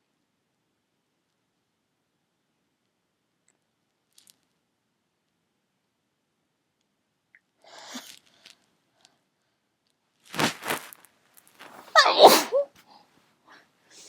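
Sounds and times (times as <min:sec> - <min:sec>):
person sneezing: 0:11.6 - 0:12.7.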